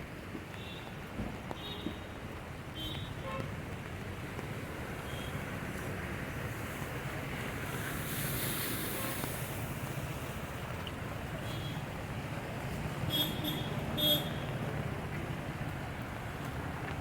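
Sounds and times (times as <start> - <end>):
vehicle engine rumble: 3.6 - 17.0.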